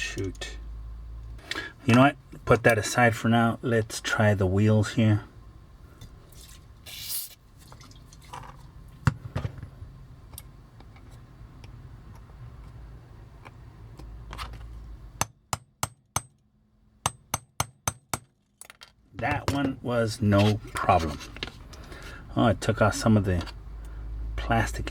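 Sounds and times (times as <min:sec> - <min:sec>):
hammer tapping metal punch: 0:15.2 - 0:16.4.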